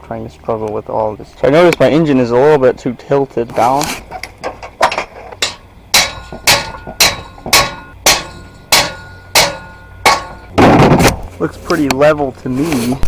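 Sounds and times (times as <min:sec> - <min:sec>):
hammer blows on metal: 0:05.4 - 0:10.6.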